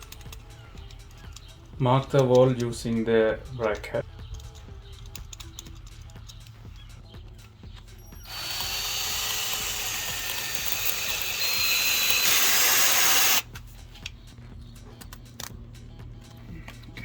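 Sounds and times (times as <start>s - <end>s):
power drill boring into wall: 8.2s - 13.4s.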